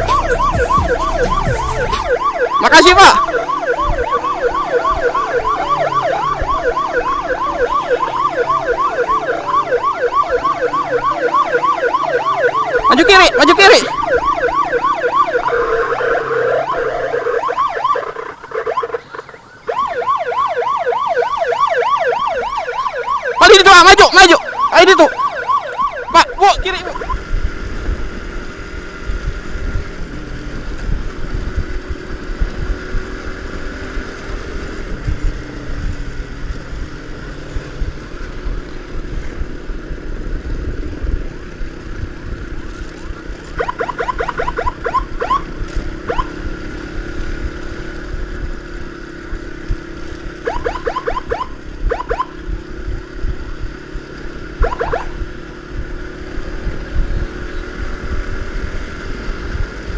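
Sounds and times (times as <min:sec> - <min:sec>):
motorcycle engine: 0:00.0 - 0:23.7, 0:24.4 - 0:59.9
wind rumble on microphone: 0:28.9 - 0:33.3, 0:34.8 - 0:36.8, 0:55.7 - 0:59.9.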